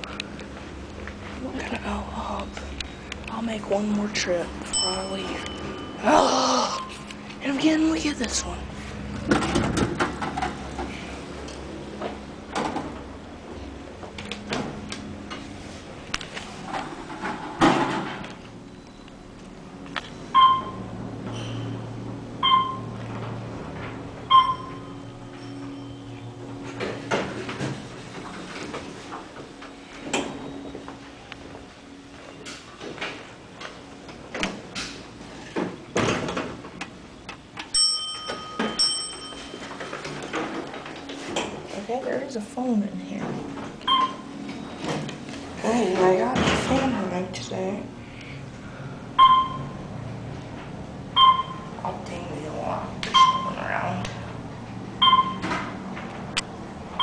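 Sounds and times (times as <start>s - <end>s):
low hum: 0.0s - 57.0s
electronic chime: 4.7s - 7.0s, 24.3s - 26.3s.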